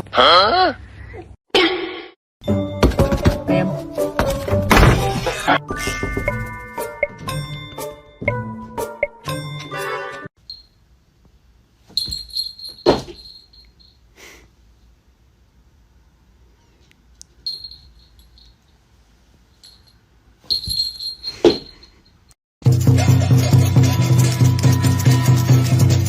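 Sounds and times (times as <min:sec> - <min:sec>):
music: 0:02.4 - 0:10.3, 0:22.6 - 0:26.0
small bell jingling: 0:10.4 - 0:10.8, 0:11.9 - 0:14.1, 0:17.4 - 0:18.8, 0:19.5 - 0:22.4.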